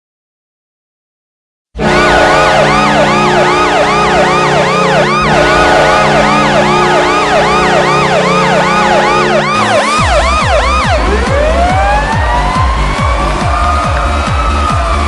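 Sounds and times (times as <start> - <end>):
low horn chord: 1.8 - 11.7
siren wailing in swoops: 1.8 - 13.0.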